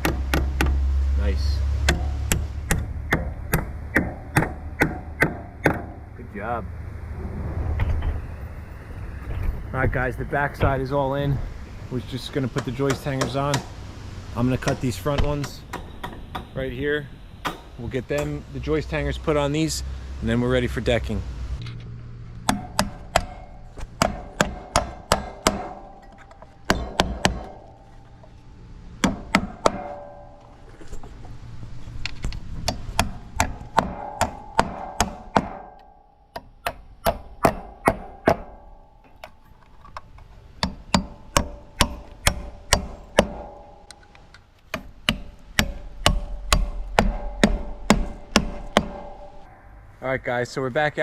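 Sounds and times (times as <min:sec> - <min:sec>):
hammer striking nails into metal: 0:00.0 - 0:00.8, 0:01.9 - 0:06.0, 0:12.6 - 0:13.7, 0:22.5 - 0:28.2, 0:29.0 - 0:30.5, 0:32.6 - 0:39.4, 0:40.6 - 0:49.5.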